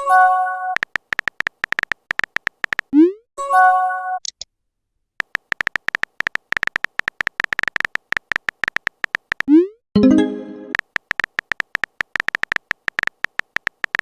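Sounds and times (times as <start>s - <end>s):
rapid irregular clicking: 0.8s - 2.9s, 5.2s - 9.5s, 10.7s - 14.0s.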